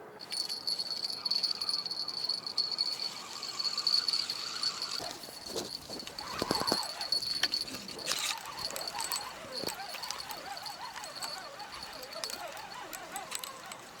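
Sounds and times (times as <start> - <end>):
crickets trilling: 0.0 - 14.0
wavering animal calls: 0.2 - 14.0.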